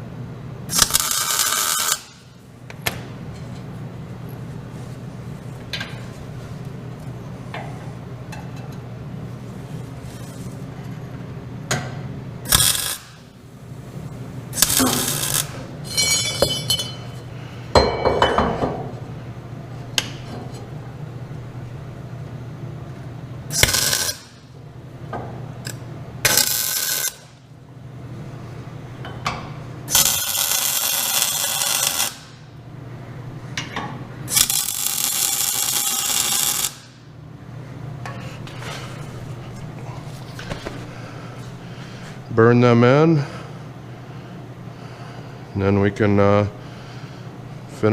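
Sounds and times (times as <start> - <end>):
steady low hum: 0.0 - 47.9
welding crackle: 0.7 - 2.3, 12.5 - 13.3, 14.6 - 16.3, 23.5 - 24.5, 25.6 - 27.4, 29.9 - 32.4, 34.3 - 36.9
metal clinks and clanks: 15.9 - 17.1.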